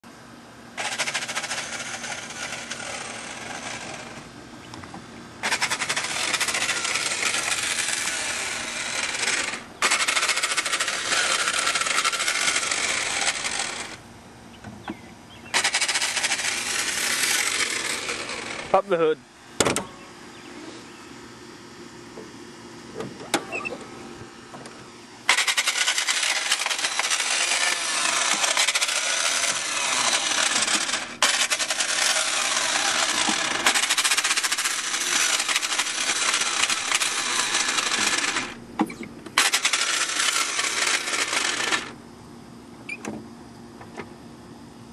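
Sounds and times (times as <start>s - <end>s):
faint steady hum: 0.0s - 44.9s
starter motor whirring and grinding: 0.8s - 4.3s, 5.4s - 14.0s, 14.9s - 18.8s, 24.5s - 42.0s.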